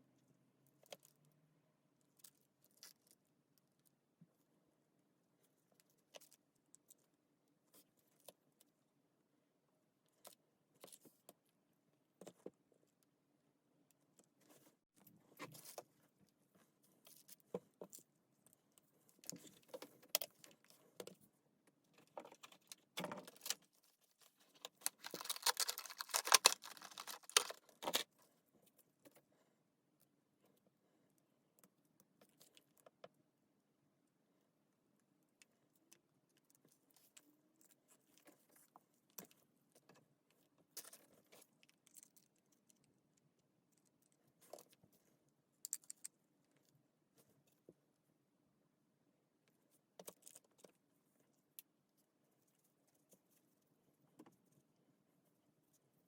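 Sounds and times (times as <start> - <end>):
small metal parts rattling: 24.8 - 27.5.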